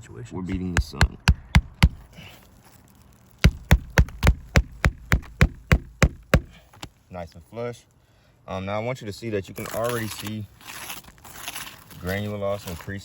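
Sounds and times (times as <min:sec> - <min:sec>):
hammer striking nail: 0:00.5 - 0:02.1, 0:03.4 - 0:06.9.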